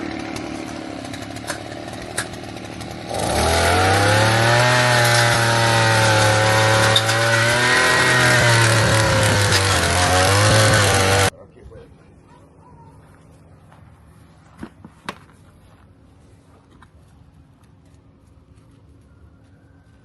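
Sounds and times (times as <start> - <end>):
small engine droning: 0.0 - 11.3.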